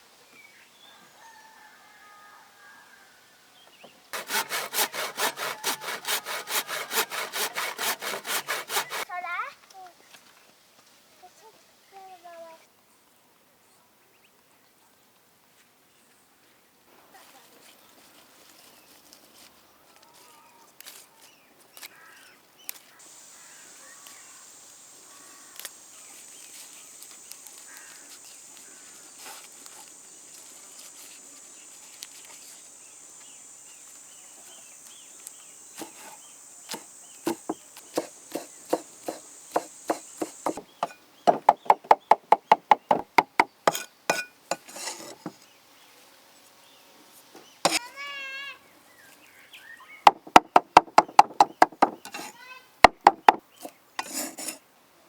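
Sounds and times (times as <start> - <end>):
knife chopping on cutting board: 4.2 - 9.0, 35.8 - 45.4, 50.1 - 52.3, 52.9 - 53.4
high insect buzz: 23.0 - 43.9.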